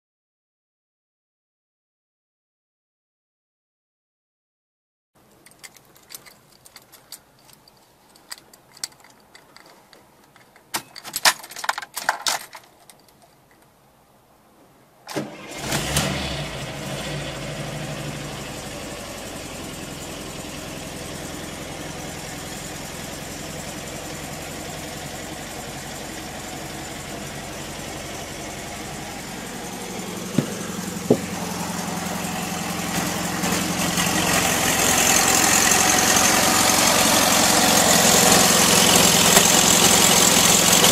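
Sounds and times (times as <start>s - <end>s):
keys rattling: 5.3s - 13.6s
engine starting and idling: 15.1s - 40.9s.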